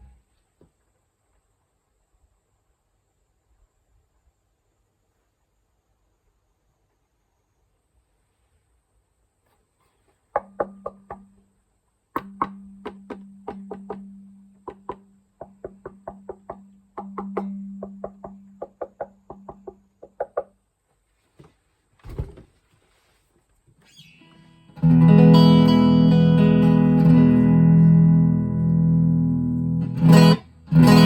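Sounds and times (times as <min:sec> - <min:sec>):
electric guitar picked notes: 0:24.0 - 0:31.0
ringing guitar chords: 0:24.0 - 0:31.0.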